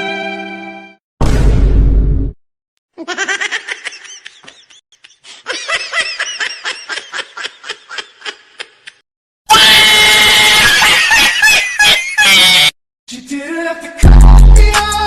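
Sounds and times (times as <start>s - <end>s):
high-pitched laugh: 3.0s - 9.0s, 10.2s - 12.7s.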